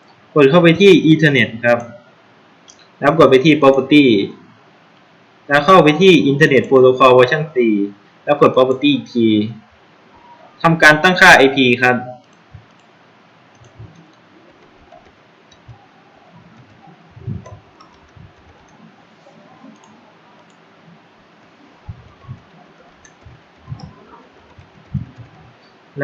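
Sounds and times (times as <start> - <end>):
computer keyboard and mouse clicks: 12.2 - 25.7.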